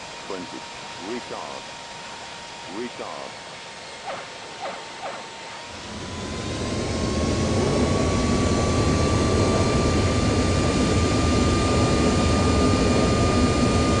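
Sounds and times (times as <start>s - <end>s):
jet engines roaring in reverse thrust: 0.0s - 14.0s
thin whine rising in pitch: 0.0s - 14.0s.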